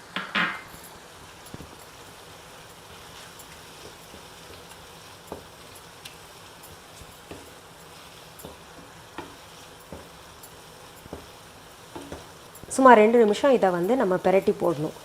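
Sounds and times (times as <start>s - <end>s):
food sizzling in oil: 0.0s - 15.0s
spoon knocking against pan: 8.4s - 12.4s.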